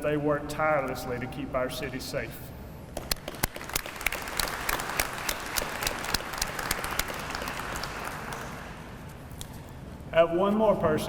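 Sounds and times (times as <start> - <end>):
audience applauding: 3.0 - 9.0.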